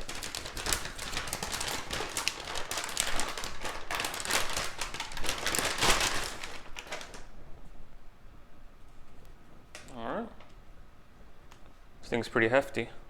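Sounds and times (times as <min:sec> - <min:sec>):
plastic packaging crinkling: 0:00.0 - 0:07.4.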